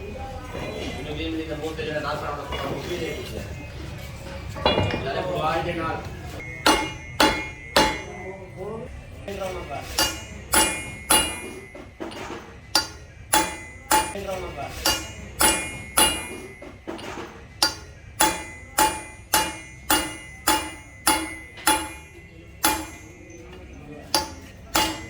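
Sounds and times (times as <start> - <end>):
hammer blows on metal: 6.4 - 8.3, 9.9 - 11.8, 12.8 - 14.2, 14.8 - 16.8, 17.6 - 23.5, 24.1 - 25.0.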